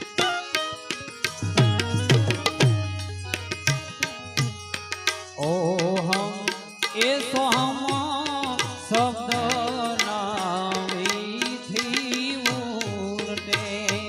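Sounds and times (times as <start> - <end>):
tabla strokes: 0.0 - 5.5.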